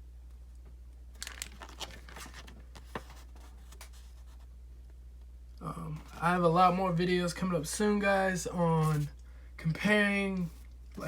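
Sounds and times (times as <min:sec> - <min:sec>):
steady low hum: 0:00.0 - 0:11.0
paper crinkling and rustling: 0:01.1 - 0:04.5.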